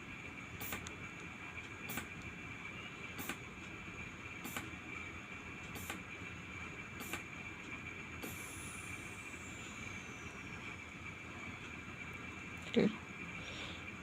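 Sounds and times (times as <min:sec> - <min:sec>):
steady high-pitched hum: 0:00.0 - 0:14.0
deflation valve clicking: 0:05.7 - 0:06.0.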